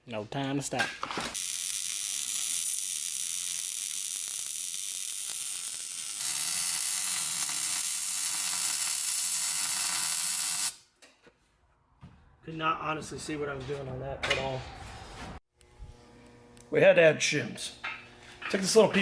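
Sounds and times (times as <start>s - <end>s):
welding arc crackling: 1.3s - 10.8s.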